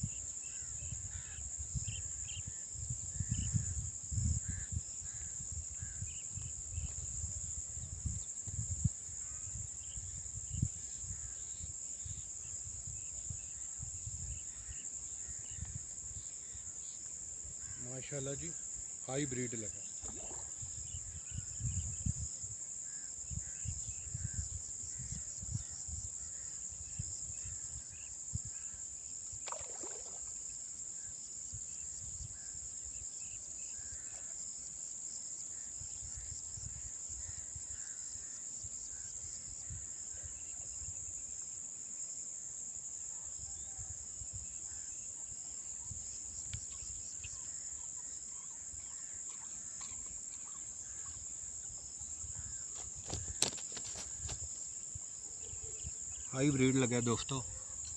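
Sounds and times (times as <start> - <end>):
insects chorus calling: 0.0 - 57.9
wind or handling noise on microphone: 2.8 - 11.3, 20.0 - 22.4, 52.3 - 54.6.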